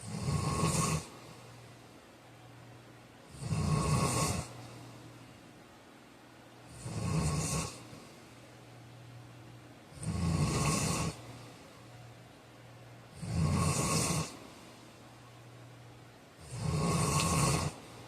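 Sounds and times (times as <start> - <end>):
man snoring: 0.0 - 1.3, 3.3 - 4.6, 6.7 - 7.9, 9.9 - 11.3, 13.1 - 14.4, 16.4 - 18.0
faint low hum: 0.0 - 18.0.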